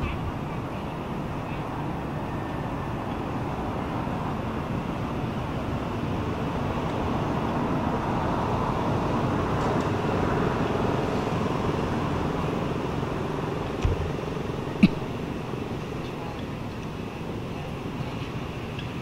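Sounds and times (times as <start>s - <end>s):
vehicle passing: 0.0s - 18.7s
road traffic rumble: 0.0s - 19.0s.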